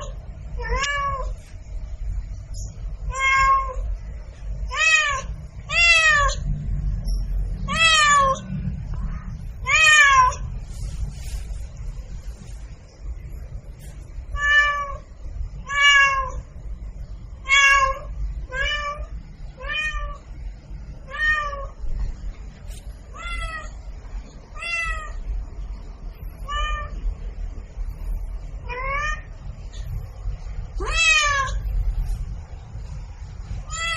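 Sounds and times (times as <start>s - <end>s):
cat meowing: 0.0s - 1.4s, 3.1s - 3.8s, 4.7s - 6.5s, 7.6s - 8.4s, 9.6s - 10.4s, 14.4s - 16.5s, 17.4s - 20.3s, 21.1s - 21.8s, 23.1s - 23.8s, 24.5s - 25.2s, 26.4s - 27.0s, 28.6s - 29.4s, 30.8s - 31.7s, 33.6s - 33.9s
low rumble: 0.0s - 33.9s.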